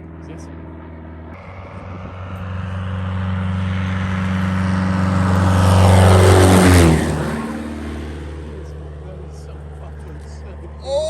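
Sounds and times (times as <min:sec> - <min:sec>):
propeller plane engine passing: 0:00.0 - 0:11.0.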